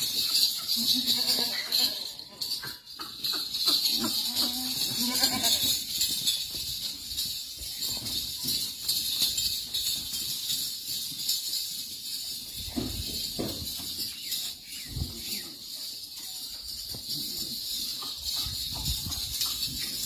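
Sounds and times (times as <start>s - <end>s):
goats bleating: 0.7s - 2.6s, 3.8s - 5.8s.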